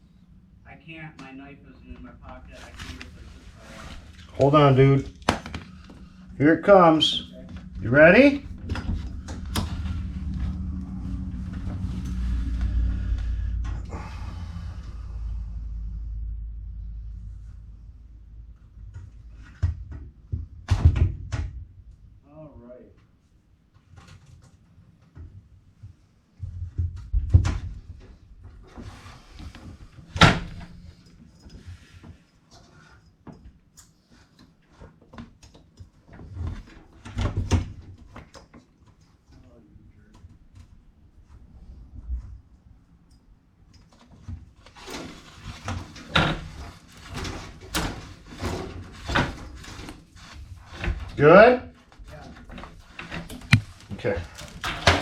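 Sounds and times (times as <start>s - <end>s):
scraping and rustling: 2.3s - 13.8s.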